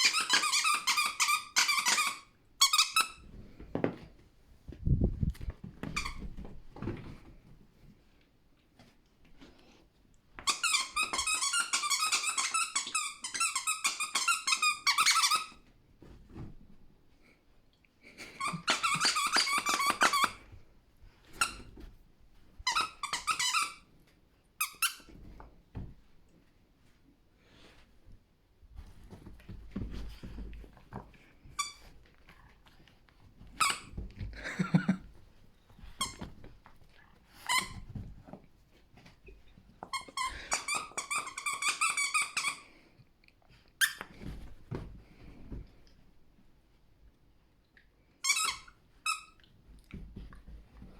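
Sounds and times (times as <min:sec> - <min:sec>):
squeaky toy squeaking: 0:00.0 - 0:03.2, 0:10.5 - 0:15.5, 0:18.4 - 0:20.4, 0:22.7 - 0:23.8, 0:39.9 - 0:42.6, 0:48.2 - 0:49.4
soft thuds and rustling: 0:03.2 - 0:08.1, 0:15.8 - 0:17.1, 0:25.1 - 0:27.0, 0:27.6 - 0:40.8, 0:44.0 - 0:46.8, 0:49.6 - 0:50.9.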